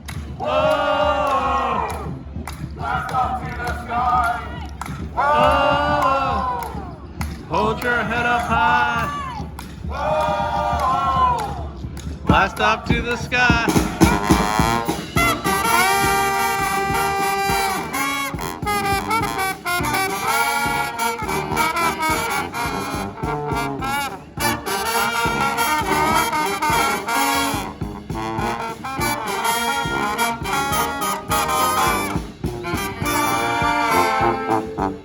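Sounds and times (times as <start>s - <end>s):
brass band playing: 12.3s - 35.0s.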